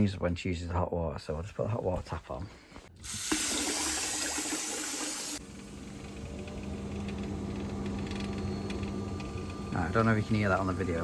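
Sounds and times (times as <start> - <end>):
tap running with loud hiss: 3.0 - 8.0
boiler ticking: 5.4 - 10.8
steady hum: 5.4 - 11.0.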